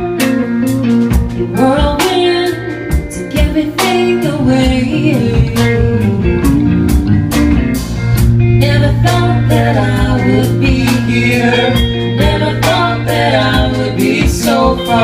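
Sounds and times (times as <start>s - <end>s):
band playing a song: 0.0s - 15.0s
guitar: 0.0s - 15.0s
steady drum beat: 0.0s - 15.0s
person singing: 1.6s - 6.4s, 8.6s - 15.0s.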